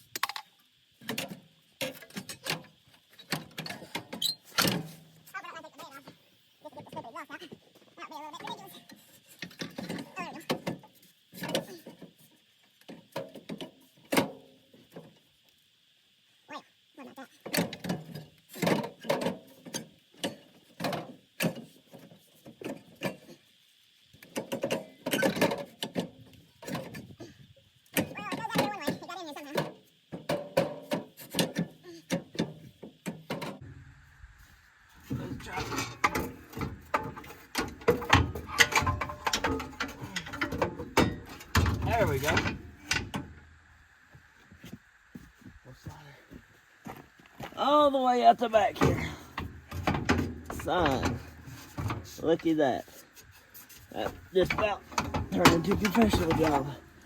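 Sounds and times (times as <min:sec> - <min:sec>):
metal tools knocking and clanking: 0:35.1 - 0:43.4, 0:48.7 - 0:52.6, 0:53.9 - 0:57.0.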